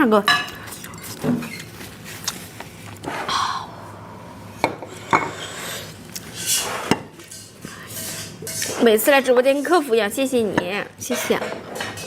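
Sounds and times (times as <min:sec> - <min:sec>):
utensils clinking against a dish: 0:00.2 - 0:01.7, 0:04.6 - 0:12.0.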